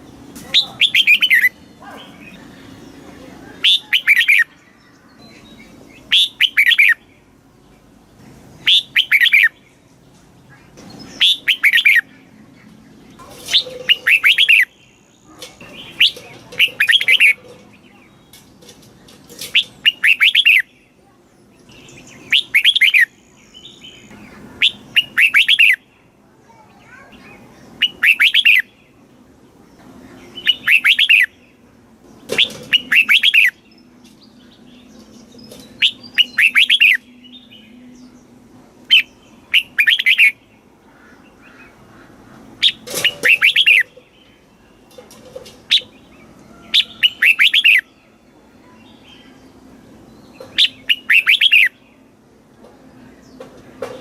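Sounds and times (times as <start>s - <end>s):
bird singing whistled phrases: 0.6s - 1.6s, 3.6s - 4.5s, 5.4s - 7.0s, 8.6s - 9.6s, 11.2s - 12.1s, 19.6s - 20.7s, 22.2s - 25.8s, 27.8s - 28.7s, 30.4s - 31.3s, 35.8s - 37.8s, 38.9s - 40.4s, 42.6s - 43.9s, 46.7s - 47.9s, 50.6s - 51.8s.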